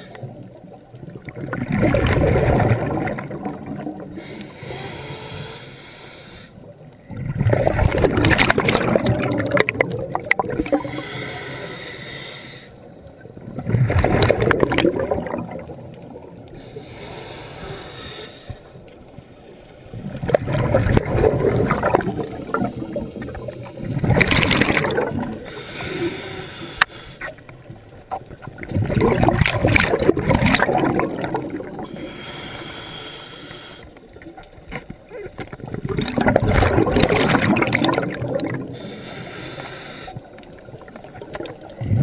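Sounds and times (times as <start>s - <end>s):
exhaled air bubbling underwater: 0.0s - 42.0s
regulator hiss on inhale: 4.1s - 6.7s, 10.7s - 12.8s, 16.5s - 19.0s, 25.4s - 27.5s, 31.8s - 34.1s, 38.6s - 40.4s.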